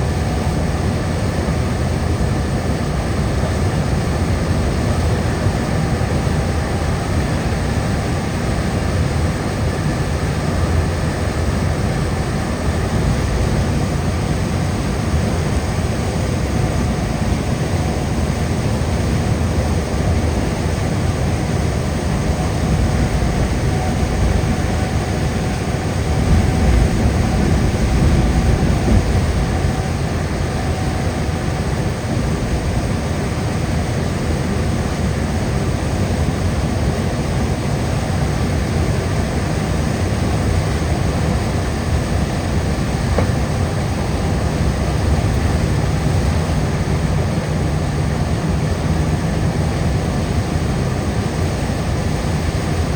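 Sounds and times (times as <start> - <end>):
car road noise at highway speed: 21.8 - 33.1.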